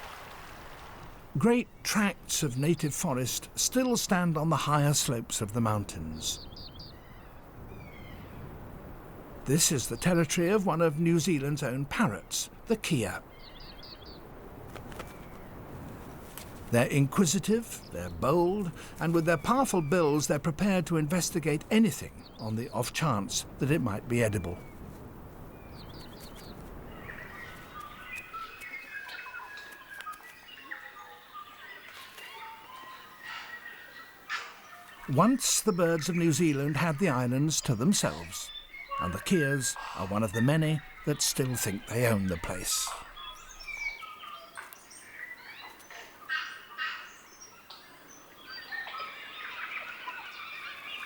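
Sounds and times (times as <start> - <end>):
birds whistling: 5.9 - 8.4, 13.0 - 14.3, 25.5 - 51.0.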